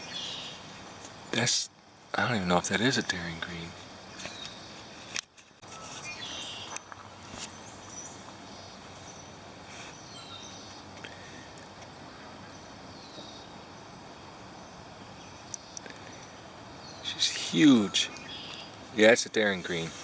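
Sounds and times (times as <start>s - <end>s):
bird chirps: 0.0s - 0.7s, 4.1s - 4.8s, 5.6s - 11.4s, 12.1s - 13.6s, 14.6s - 18.8s
insects trilling: 0.0s - 20.0s.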